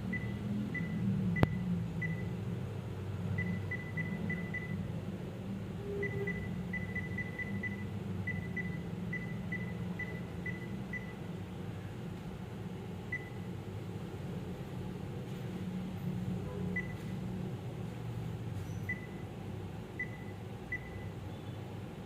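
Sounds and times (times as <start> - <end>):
low steady hum: 0.0 - 22.0
high electronic beeps: 3.4 - 4.8, 6.0 - 11.2.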